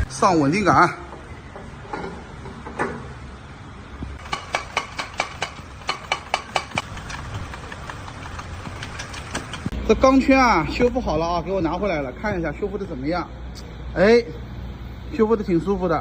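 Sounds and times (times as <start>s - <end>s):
metal tools knocking: 4.2s - 9.7s
sharp metallic clicks: 4.2s - 9.8s.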